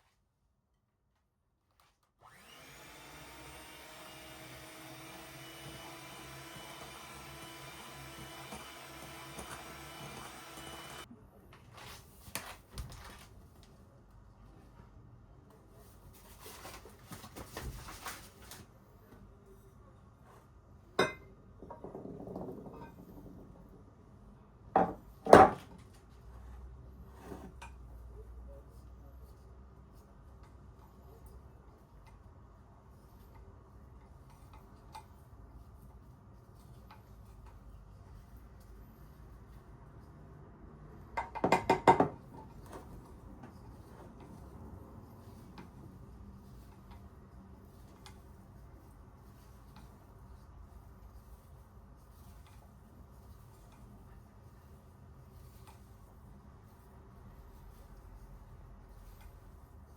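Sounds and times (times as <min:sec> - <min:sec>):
appliance motor whirring hum: 0:02.2 - 0:11.1
soft rustle: 0:11.4 - 0:20.6, 0:42.6 - 0:59.9.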